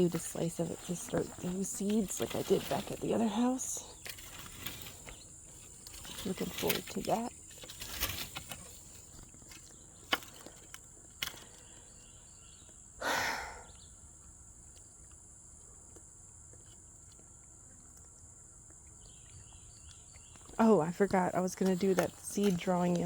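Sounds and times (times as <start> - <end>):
insect chorus drone: 0.0 - 17.2.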